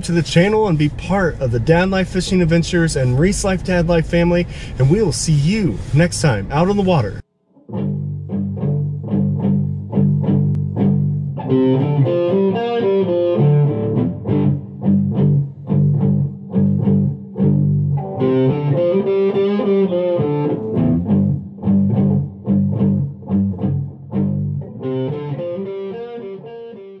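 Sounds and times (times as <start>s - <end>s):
guitar-led music with bass line: 7.6s - 27.0s.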